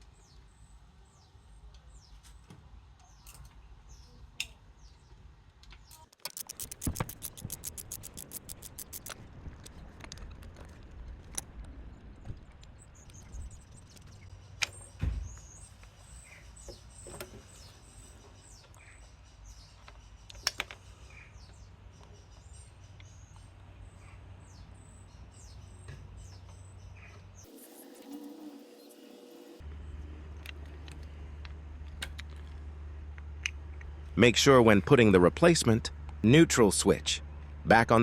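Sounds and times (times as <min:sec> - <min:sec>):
small birds chirping: 0:05.8 - 0:09.1, 0:12.7 - 0:29.6
sharp clicks and knocks: 0:06.0 - 0:11.5.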